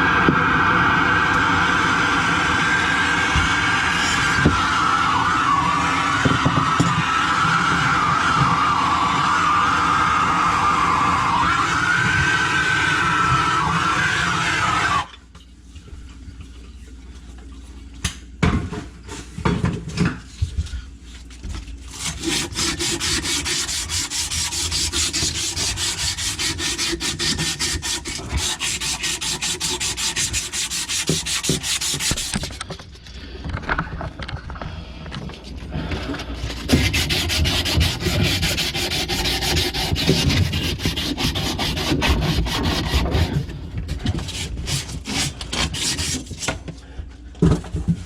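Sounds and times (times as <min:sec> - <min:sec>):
hand tool rasping on pipe: 0:21.9 - 0:32.7, 0:36.5 - 0:43.5, 0:44.2 - 0:46.5.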